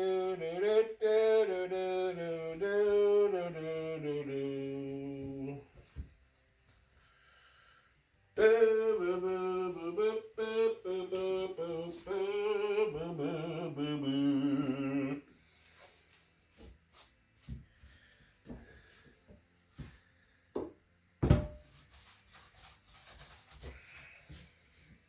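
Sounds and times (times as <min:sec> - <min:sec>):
man singing unaccompanied: 0:00.0 - 0:05.8, 0:08.4 - 0:15.3.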